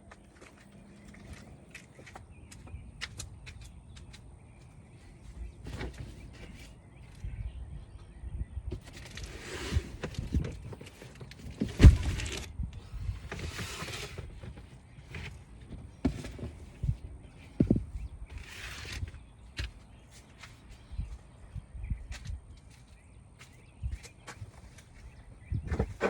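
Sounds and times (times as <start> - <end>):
rustling scrapes: 8.8 - 15.5, 18.3 - 19.3.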